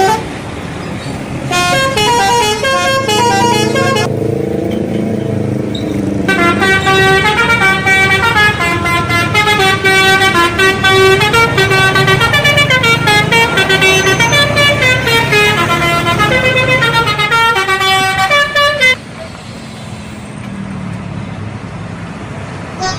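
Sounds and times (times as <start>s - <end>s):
musical air horn tune: 0.0s - 0.3s, 1.5s - 4.1s, 6.3s - 19.0s
bus engine rumble: 0.0s - 22.9s.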